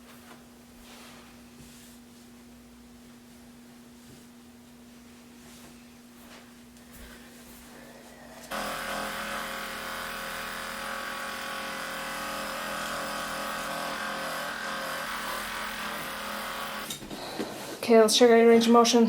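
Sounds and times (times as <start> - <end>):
massage gun motor humming: 8.4 - 17.0.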